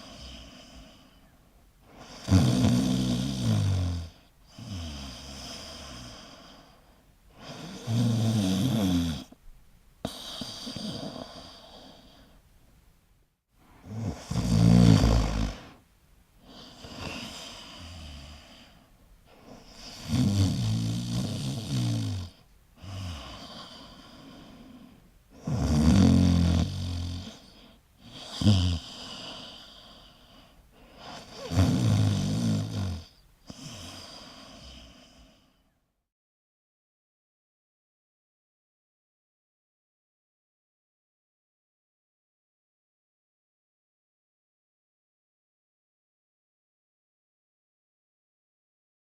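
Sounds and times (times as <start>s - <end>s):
soft breath: 0.0s - 2.2s, 4.2s - 7.9s, 10.0s - 12.5s, 16.4s - 20.1s, 22.8s - 25.4s, 27.2s - 31.7s, 33.0s - 35.8s
koala snoring: 1.9s - 6.8s, 7.4s - 9.4s, 10.1s - 12.3s, 13.8s - 15.8s, 16.4s - 35.4s.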